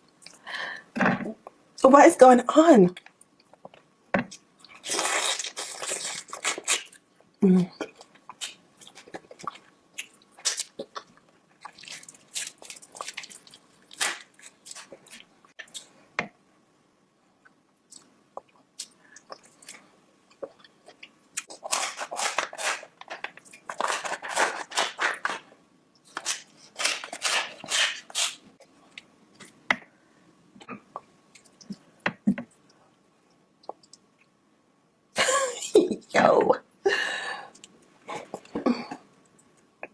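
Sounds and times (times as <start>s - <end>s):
chewing and crunching food: 7.8s - 15.9s
wet mouth sounds: 33.6s - 34.1s.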